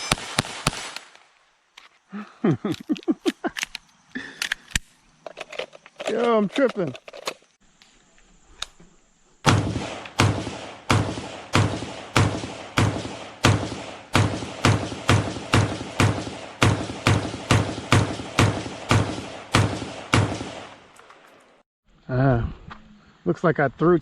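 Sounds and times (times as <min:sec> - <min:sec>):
rapid gunshots: 0:09.5 - 0:20.9.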